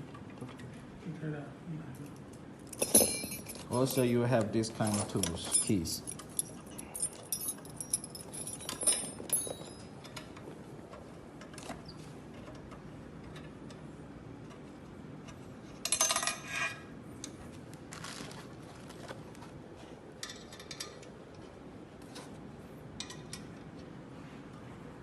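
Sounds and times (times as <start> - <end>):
ringing metal clatter: 2.7 - 4.0, 4.8 - 10.1
metal keys clinking: 2.7 - 4.1, 4.7 - 10.2.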